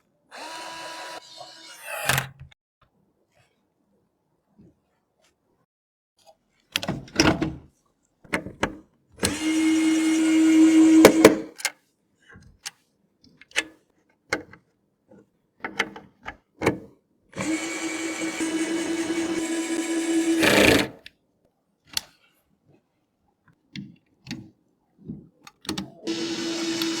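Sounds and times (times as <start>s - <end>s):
electric screwdriver whirring: 0.3s - 1.4s, 9.2s - 11.4s, 17.4s - 21.0s, 26.1s - 27.0s.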